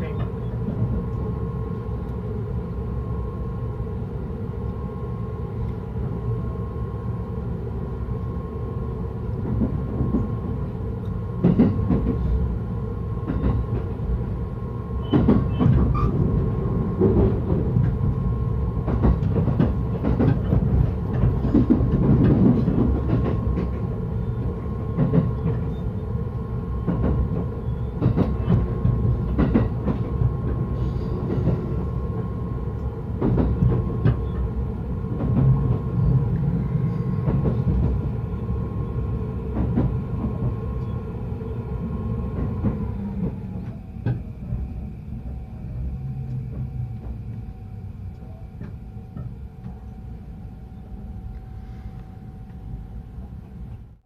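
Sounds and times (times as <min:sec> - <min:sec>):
rail-joint clicks and knocks: 0:00.0 - 0:01.3, 0:09.4 - 0:10.4, 0:11.0 - 0:12.4, 0:13.2 - 0:14.0, 0:15.0 - 0:26.0, 0:26.8 - 0:32.2, 0:32.8 - 0:38.1, 0:39.5 - 0:41.0, 0:42.3 - 0:44.9, 0:46.0 - 0:50.1
train rumble: 0:00.0 - 0:54.0.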